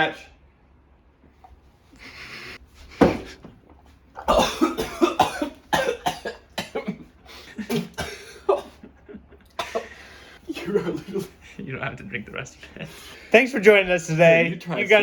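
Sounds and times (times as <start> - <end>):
person coughing: 4.2 - 8.8, 9.6 - 11.3.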